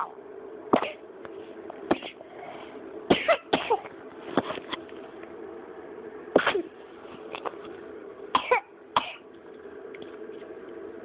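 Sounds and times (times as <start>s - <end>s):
person coughing: 1.9s - 2.2s, 3.1s - 3.9s, 6.4s - 6.7s, 8.4s - 9.2s.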